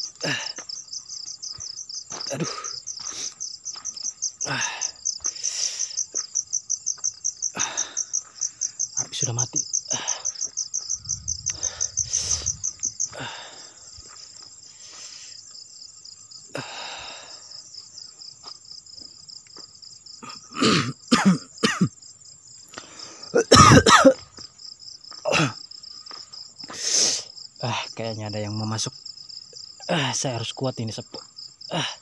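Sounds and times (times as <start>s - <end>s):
crickets trilling: 0.0s - 32.0s
person making breathy vocal sounds: 0.2s - 0.6s, 2.3s - 3.3s, 4.4s - 5.9s, 7.6s - 8.0s, 11.5s - 13.8s.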